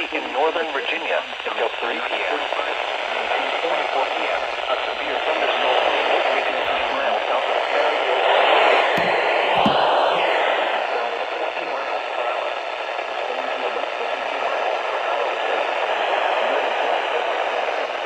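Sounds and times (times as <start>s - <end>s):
clicks: 9.0s - 10.4s.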